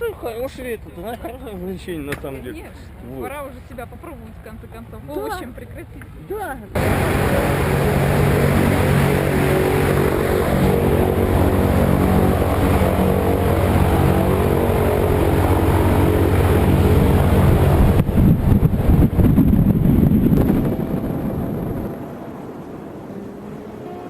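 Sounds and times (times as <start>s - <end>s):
propeller aircraft engine droning: 0.0s - 24.0s
rough wind buffeting microphone: 6.8s - 23.8s.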